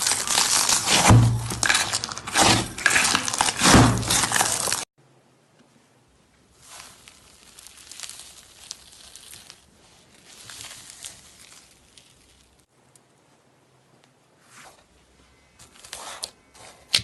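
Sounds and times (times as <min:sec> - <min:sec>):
slime squished by hand: 0:00.0 - 0:04.8, 0:06.6 - 0:12.6.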